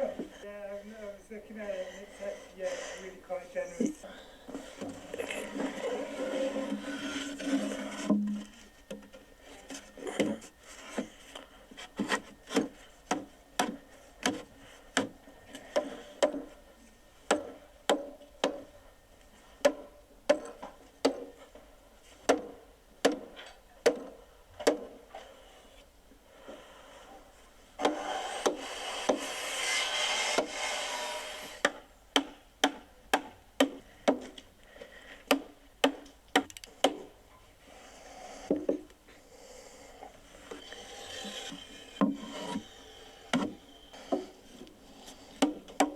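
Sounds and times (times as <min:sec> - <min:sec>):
sawing: 0:04.8 - 0:09.0, 0:27.8 - 0:32.3, 0:37.9 - 0:45.9.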